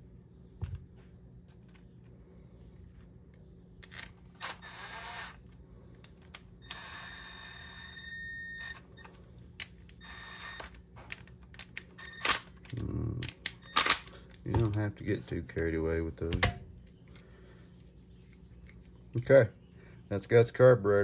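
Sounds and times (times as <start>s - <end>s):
small clicks of parts and screws: 3.8s - 7.2s, 8.6s - 14.4s
cordless screwdriver motor whirring: 3.9s - 5.6s, 6.3s - 9.1s.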